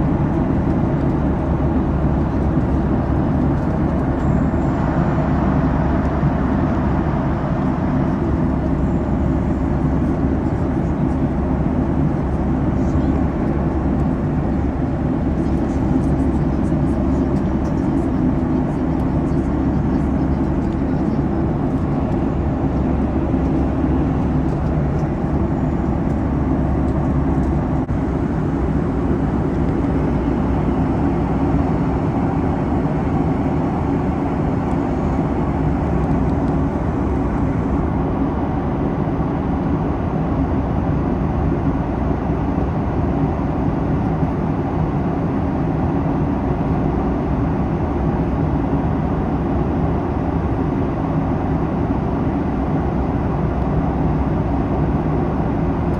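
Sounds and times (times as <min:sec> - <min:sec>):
airplane cabin engine rush: 0:00.0 - 0:55.9.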